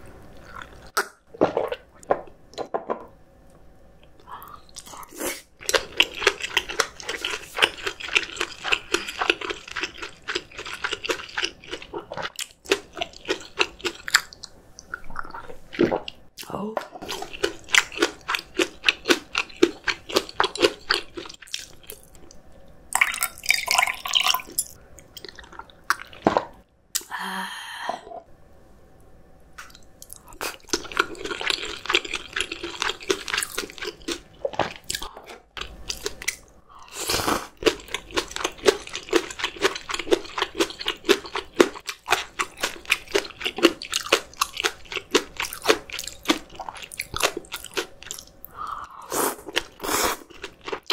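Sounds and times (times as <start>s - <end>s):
chewing and crunching: 4.4s - 16.2s, 17.0s - 22.4s, 29.7s - 36.5s, 37.3s - 48.6s, 49.4s - 50.9s.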